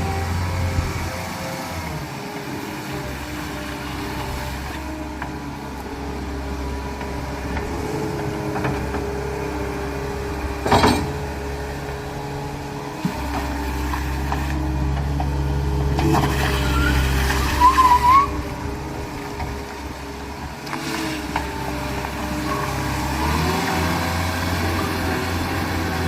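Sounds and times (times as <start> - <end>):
diesel engine running: 0.0 - 26.0.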